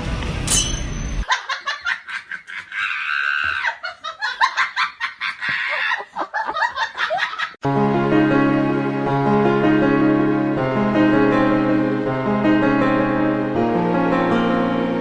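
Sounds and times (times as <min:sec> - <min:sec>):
high-pitched laughter: 0:01.2 - 0:07.6.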